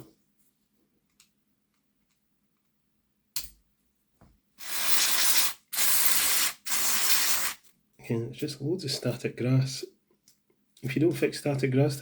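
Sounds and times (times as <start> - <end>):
aerosol spray bursts: 4.6 - 7.6.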